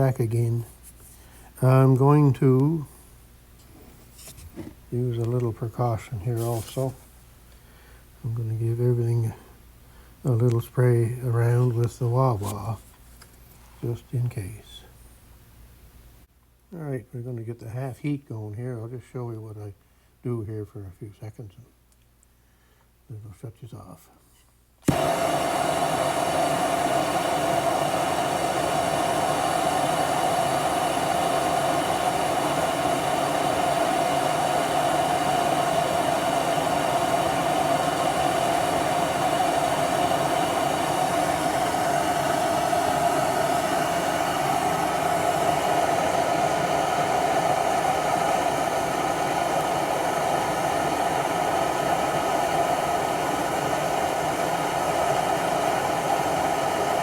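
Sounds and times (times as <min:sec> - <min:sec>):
gas torch lighting pop: 0:24.8 - 0:43.0
gas torch hissing: 0:24.8 - 0:57.0.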